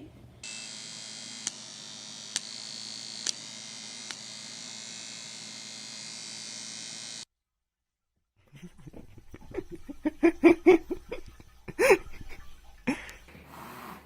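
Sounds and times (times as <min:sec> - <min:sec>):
sharp clicks: 0:03.2 - 0:03.4.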